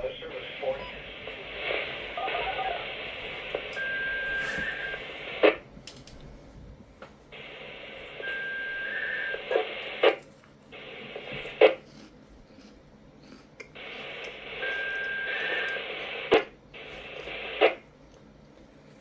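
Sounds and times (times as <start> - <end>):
radio static bursts: 0.0 - 5.8, 7.3 - 11.8, 13.8 - 17.8.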